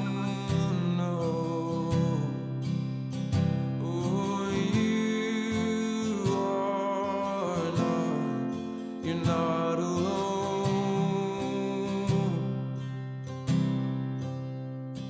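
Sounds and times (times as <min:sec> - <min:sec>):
strummed acoustic guitar: 0:00.0 - 0:15.0
person singing: 0:03.8 - 0:12.6.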